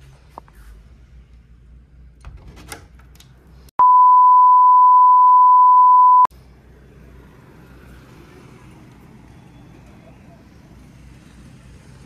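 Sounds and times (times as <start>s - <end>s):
electronic beep tone: 3.8s - 6.3s.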